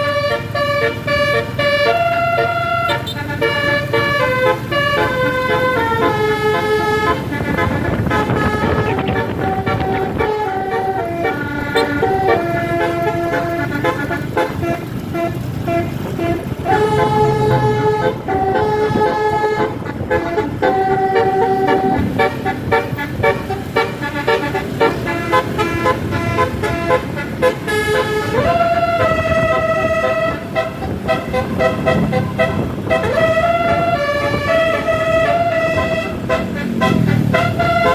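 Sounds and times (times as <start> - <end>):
moving bus rumble: 0.0 - 37.9
musical bus horn: 0.0 - 37.9.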